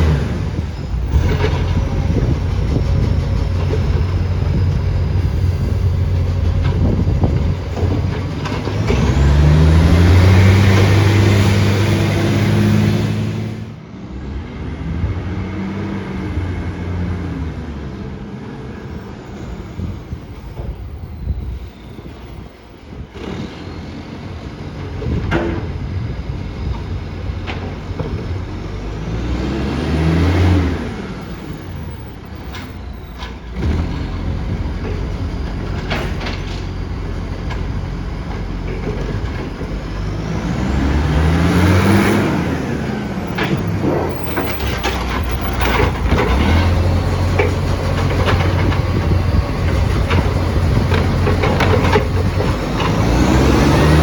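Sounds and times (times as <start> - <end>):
garbage truck engine with exhaust leak: 0.0 - 13.8, 18.7 - 54.0
sharp knocks and clanks: 32.5 - 40.1, 43.2 - 54.0.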